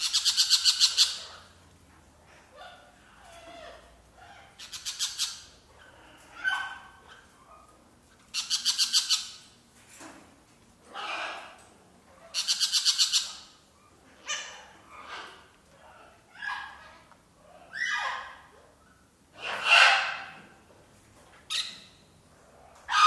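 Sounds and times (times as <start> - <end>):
parrots squawking: 0.0 - 1.5, 2.3 - 9.4, 10.9 - 11.6, 12.2 - 18.5, 19.3 - 20.6, 21.5 - 22.0, 22.6 - 23.0.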